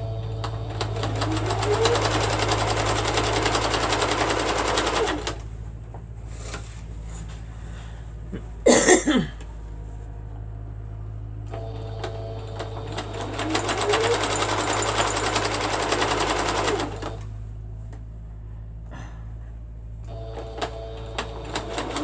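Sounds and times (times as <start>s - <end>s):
sewing machine stitching: 0.0s - 5.5s, 11.5s - 17.3s, 20.1s - 22.0s
steady hum: 0.0s - 22.0s.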